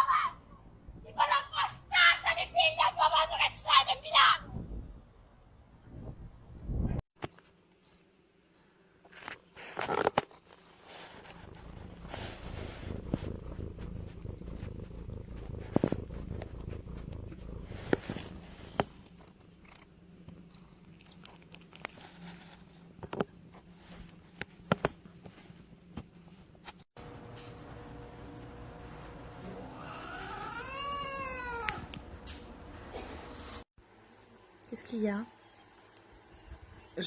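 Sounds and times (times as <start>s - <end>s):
cat purring: 10.8s - 25.6s.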